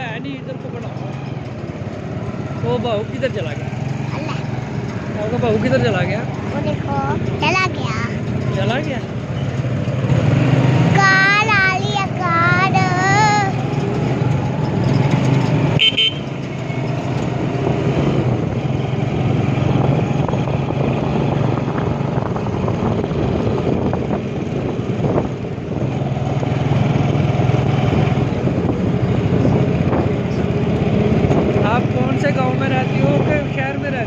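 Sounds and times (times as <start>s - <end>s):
motorcycle engine running: 0.0s - 34.0s
road and traffic noise: 0.0s - 34.0s
vehicle horn beep: 15.8s - 16.4s.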